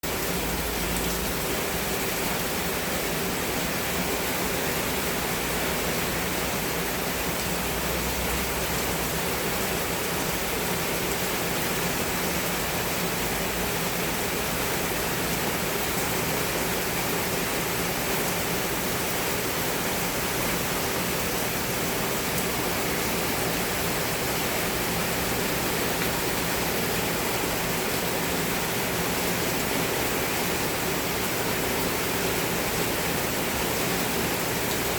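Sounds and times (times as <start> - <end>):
heavy rain pouring: 0.0 - 34.9.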